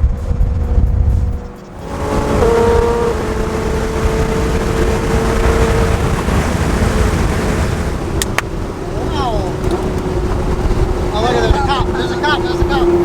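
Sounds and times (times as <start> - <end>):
wind and road noise: 0.0 - 13.0.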